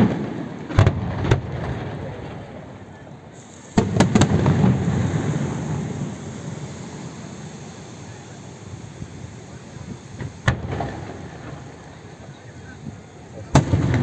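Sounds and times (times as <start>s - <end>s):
fireworks shell bursts rumbling: 0.0s - 14.0s
sharp aerial shell burst: 3.4s - 11.9s.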